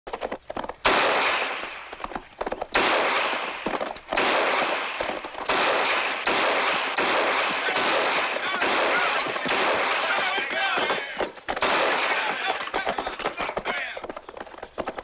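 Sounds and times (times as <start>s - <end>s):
gunshots with echo: 0.8s - 14.2s.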